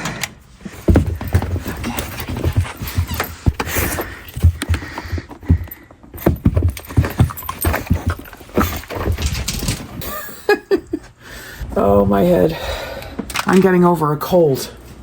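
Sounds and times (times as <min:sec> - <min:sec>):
footsteps on a hard surface: 0:00.6 - 0:09.4.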